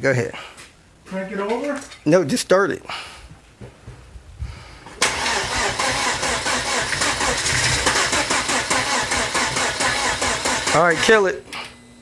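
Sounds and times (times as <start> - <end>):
car engine cranking: 5.0 - 11.2.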